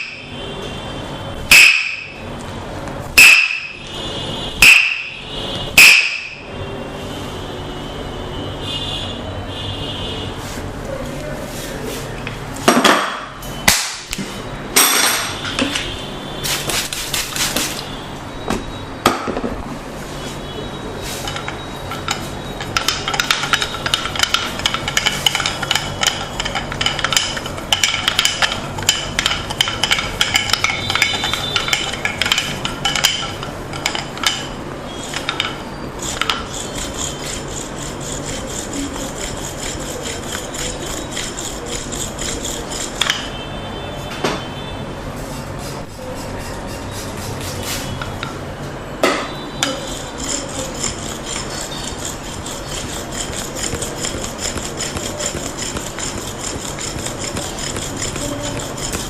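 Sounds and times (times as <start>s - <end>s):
wooden tools knocking: 21.3s - 43.3s, 49.1s - 59.0s.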